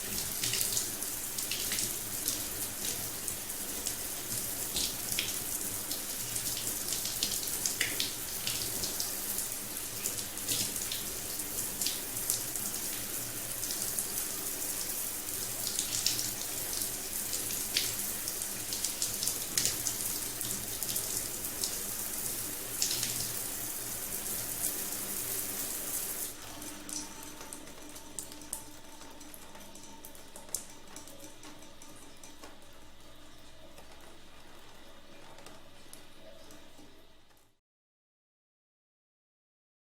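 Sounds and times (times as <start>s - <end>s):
shower water hissing: 0.0s - 27.3s
faint water drips: 0.0s - 37.5s.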